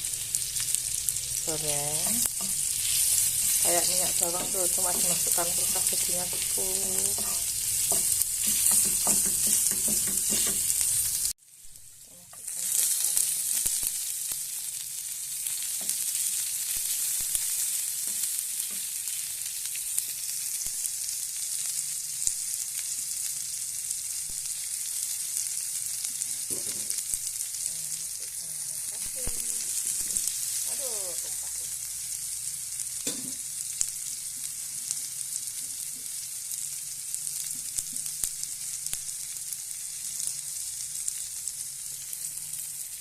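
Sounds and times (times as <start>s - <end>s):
food sizzling in oil: 0.0s - 43.0s
stirring knocks: 3.6s - 10.8s.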